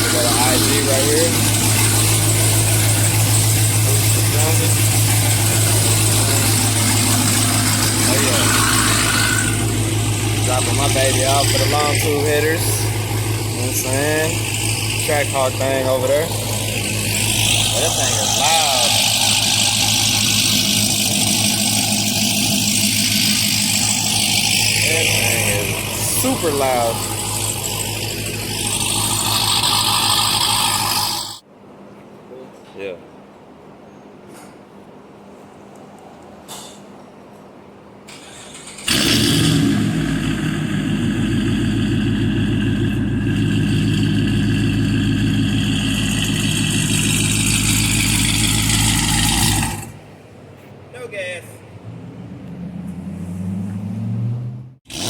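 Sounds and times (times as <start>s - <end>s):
loud car engine idling: 0.0s - 31.4s, 38.1s - 50.4s.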